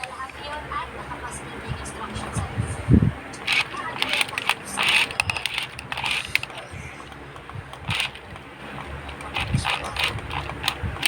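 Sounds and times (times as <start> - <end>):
toys knocking together: 3.4 - 11.0.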